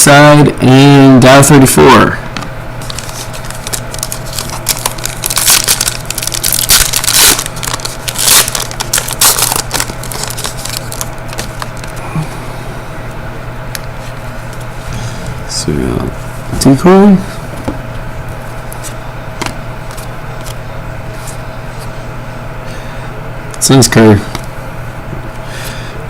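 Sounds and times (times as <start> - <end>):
cards being handled: 2.4 - 12.0, 17.5 - 22.0
wrapper crackling being torn: 2.8 - 12.0.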